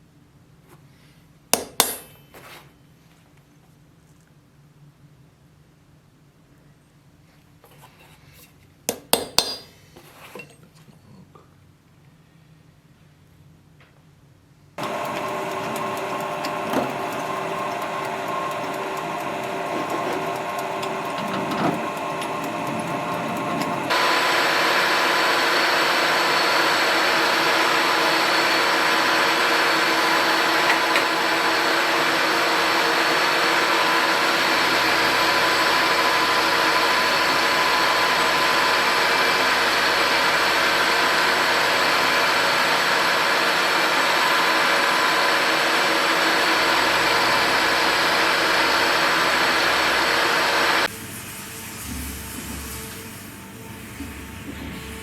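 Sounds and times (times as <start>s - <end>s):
electric machine whining: 14.8s - 50.9s.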